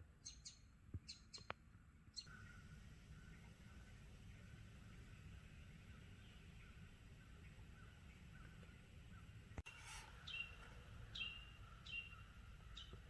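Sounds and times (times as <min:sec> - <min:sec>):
birds chirping: 0:00.2 - 0:13.0
low background hiss: 0:01.6 - 0:13.0.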